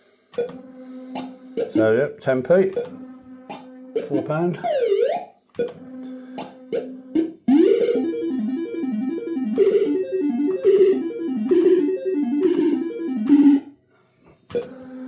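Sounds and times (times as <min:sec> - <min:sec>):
fast electronic tune: 0:02.8 - 0:05.2, 0:05.9 - 0:13.7.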